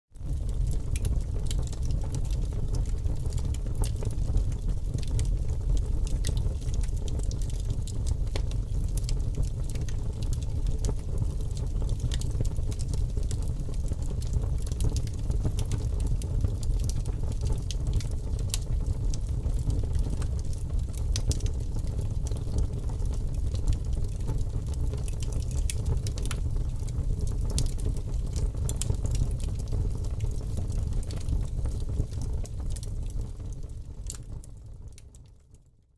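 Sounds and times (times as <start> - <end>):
wood fire crackling and popping: 0.2 - 35.4.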